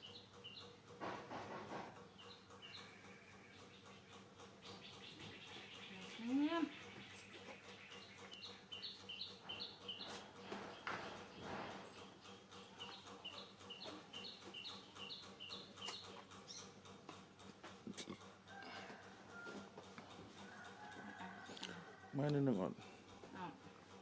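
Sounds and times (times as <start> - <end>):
bird chirping: 0.0 - 0.8, 2.0 - 11.4, 12.0 - 16.8.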